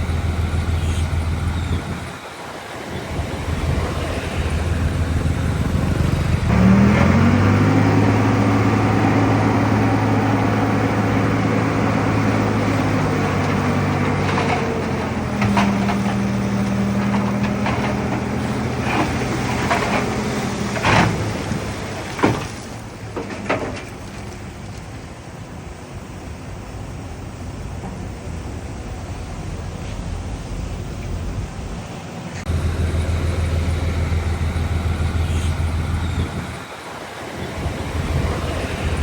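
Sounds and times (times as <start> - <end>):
heavy diesel engine revving: 2.8 - 23.0, 32.4 - 39.0.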